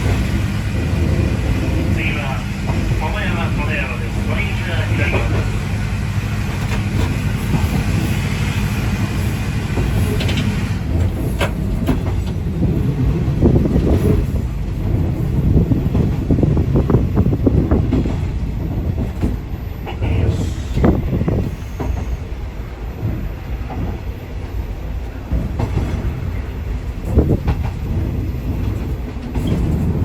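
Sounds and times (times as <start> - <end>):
low diesel engine drone: 0.0 - 15.9
wheels knocking and rattling on track: 0.0 - 20.0, 25.1 - 30.0.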